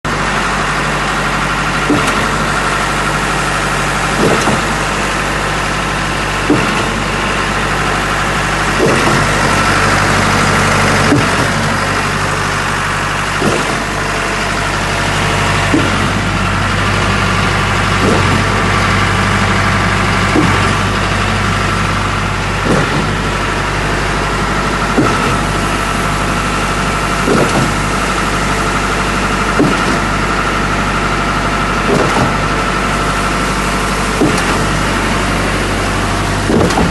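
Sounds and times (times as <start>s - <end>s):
concrete pump engine droning: 0.0s - 36.9s
pump clunking: 0.1s - 36.9s.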